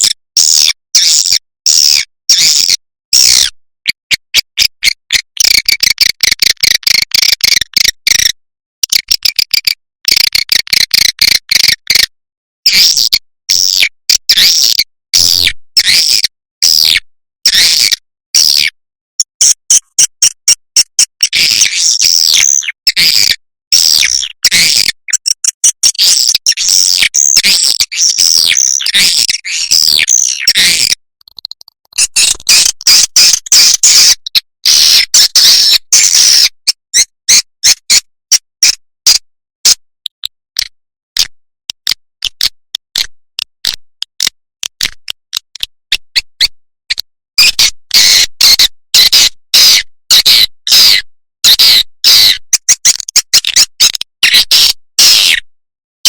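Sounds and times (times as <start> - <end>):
rapid sharp clicks: 30.0 - 34.4.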